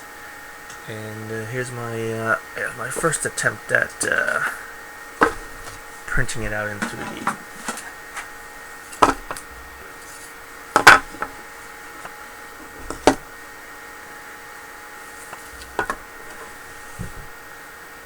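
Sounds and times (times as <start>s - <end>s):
faint room hum: 0.0s - 18.0s
hard plastic parts knocking: 6.8s - 8.3s, 9.0s - 9.5s, 10.8s - 11.4s, 12.6s - 13.3s, 15.3s - 17.3s.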